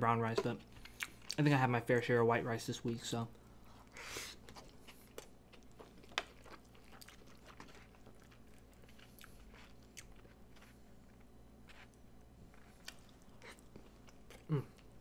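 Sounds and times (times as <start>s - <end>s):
close-up chewing: 3.6s - 15.0s.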